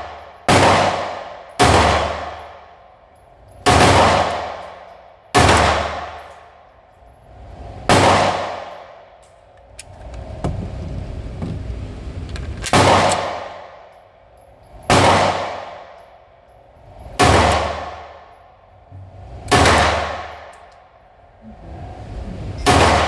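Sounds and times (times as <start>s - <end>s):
pistol shots: 0.5s - 2.5s, 3.7s - 4.7s, 5.4s - 6.3s, 7.9s - 8.8s, 12.6s - 13.8s, 14.9s - 15.9s, 17.2s - 18.0s, 19.5s - 20.5s.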